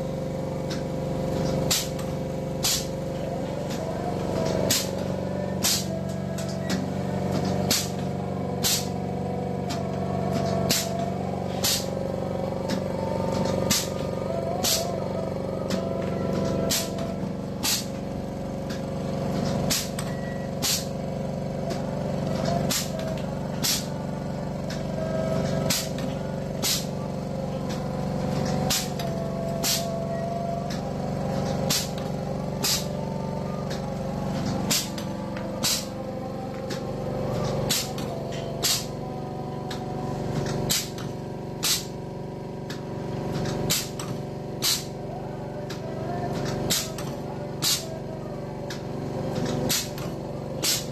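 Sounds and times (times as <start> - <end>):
machine motor hum: 0.0 - 50.9.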